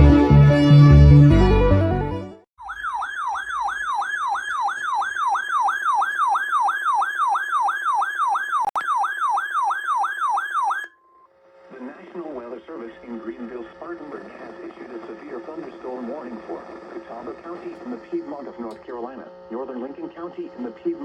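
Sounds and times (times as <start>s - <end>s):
intro music: 0.0s - 2.4s.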